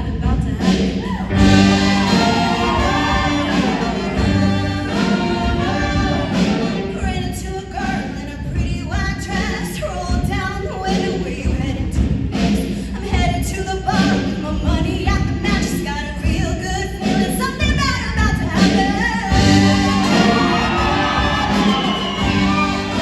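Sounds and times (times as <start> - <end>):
instrumental accompaniment: 1.3 - 7.3, 19.3 - 23.0
choir singing: 1.3 - 8.2, 19.3 - 23.0.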